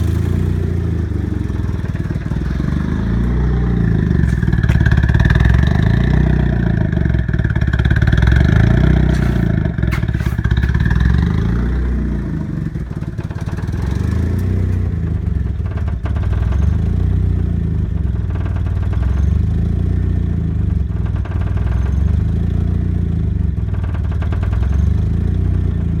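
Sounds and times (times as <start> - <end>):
higher engine note: 0.0 - 7.0
car engine rough idle: 0.0 - 26.0.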